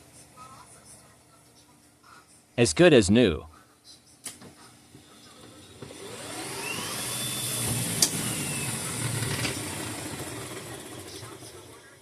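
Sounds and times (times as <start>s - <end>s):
electric motor whine: 5.4s - 11.8s.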